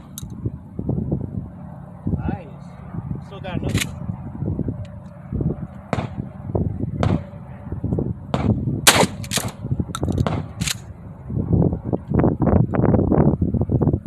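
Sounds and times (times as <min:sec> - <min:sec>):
gunshots: 0:05.9 - 0:06.2, 0:07.0 - 0:07.3, 0:08.3 - 0:09.6.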